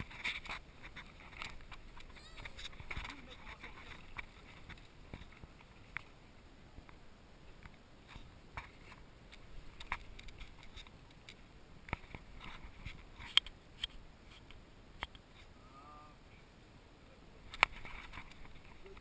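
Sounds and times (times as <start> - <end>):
light scraping: 0.0 - 6.2, 17.4 - 19.0.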